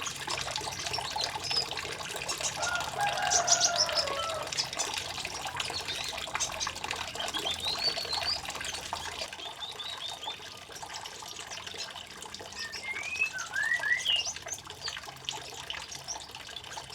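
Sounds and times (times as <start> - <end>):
trickle of running water: 0.0 - 16.9
songbirds chirping and whistling: 0.6 - 10.6, 11.5 - 15.0.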